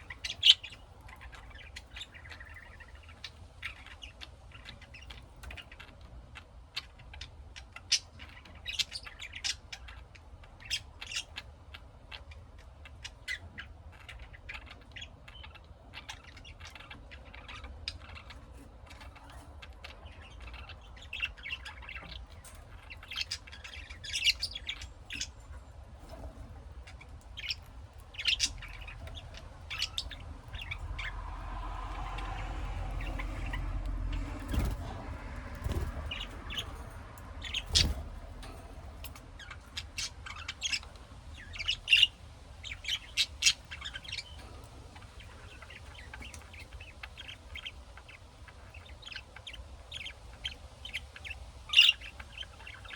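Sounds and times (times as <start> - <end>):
lovebirds chirping and squawking: 0.0 - 52.9
low rumble: 28.4 - 40.4.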